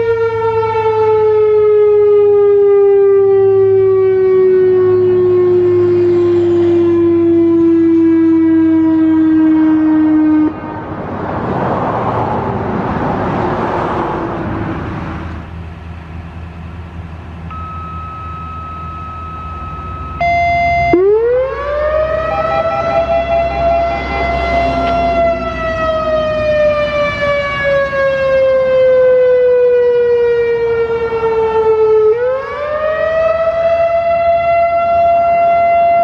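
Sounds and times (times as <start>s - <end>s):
warning siren wailing: 0.0s - 14.5s, 16.1s - 36.0s
rushing noise: 10.8s - 27.9s.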